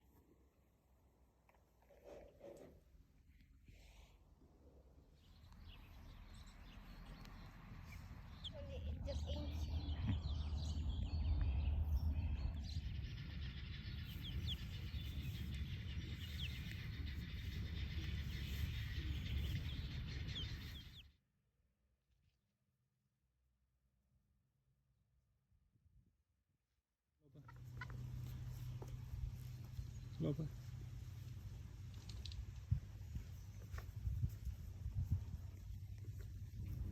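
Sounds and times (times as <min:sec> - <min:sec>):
low rumble: 0:05.9 - 0:21.0
chicks peeping: 0:11.0 - 0:21.0, 0:27.4 - 0:29.0.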